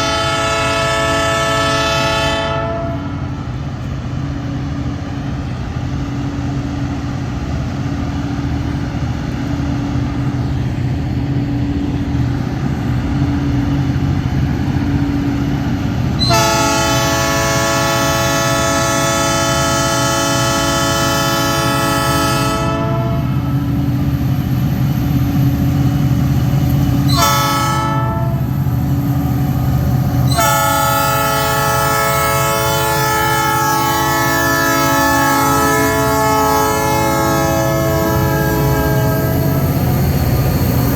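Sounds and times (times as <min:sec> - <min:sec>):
locomotive air horn blasts: 0:00.0 - 0:03.4, 0:16.2 - 0:23.7, 0:27.0 - 0:28.7, 0:30.2 - 0:39.7
diesel locomotive rumbling: 0:00.0 - 0:40.9.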